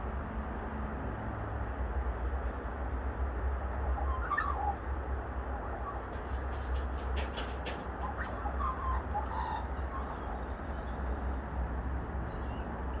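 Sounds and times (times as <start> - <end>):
kookaburras calling softly: 3.9 - 6.2, 8.0 - 11.2.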